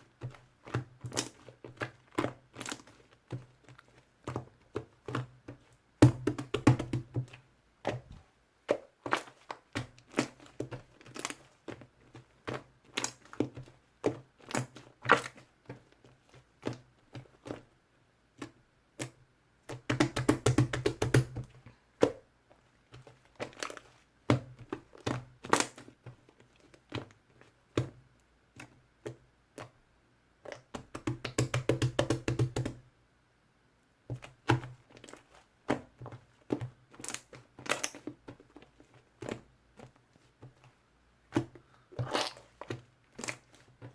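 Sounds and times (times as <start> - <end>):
slime squeezed wet popping: 41.3 - 43.6.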